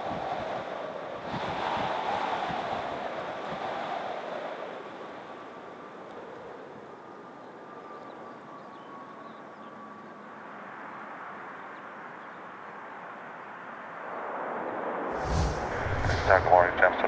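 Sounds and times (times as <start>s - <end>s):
gusty wind noise: 0.0s - 4.7s, 15.1s - 17.0s
airliner engines rushing: 15.2s - 17.0s.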